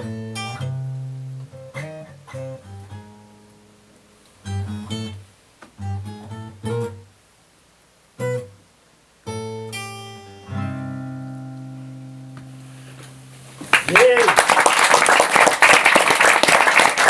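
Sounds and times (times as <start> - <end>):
acoustic guitar chords: 0.0 - 7.2, 8.2 - 14.2.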